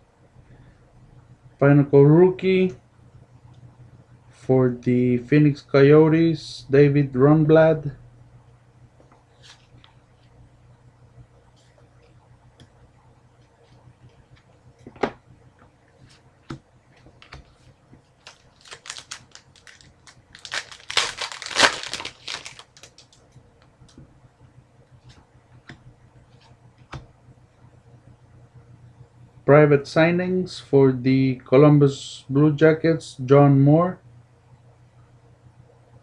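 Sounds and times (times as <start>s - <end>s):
cards clicking and rustling: 16.5s - 23.2s
foil wrapper crinkling and tearing: 18.2s - 23.2s.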